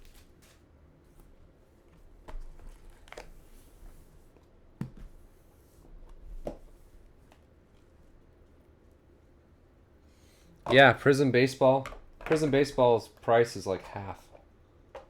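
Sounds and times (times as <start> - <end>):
cards and packaging rustling: 0.0 - 0.6.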